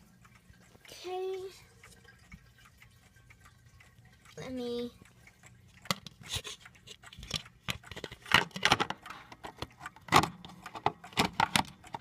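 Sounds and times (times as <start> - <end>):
small hard objects clicking and knocking: 5.9 - 12.0.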